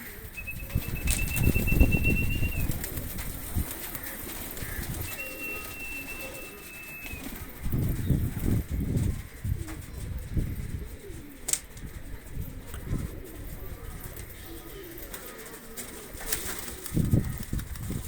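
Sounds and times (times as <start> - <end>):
pigeons cooing: 0.0 - 18.0
thin high tone: 0.4 - 2.8, 5.0 - 7.4
sharp click: 11.5 - 11.7.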